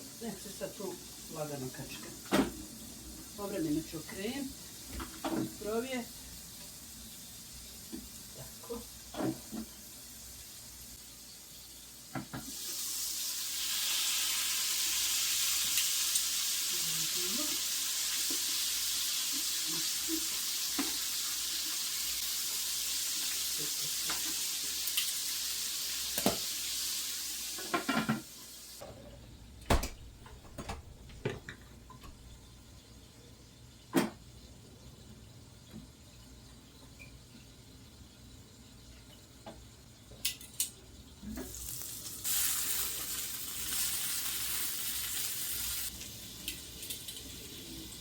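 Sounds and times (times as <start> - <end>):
food sizzling in oil: 0.0 - 28.8, 41.0 - 48.0.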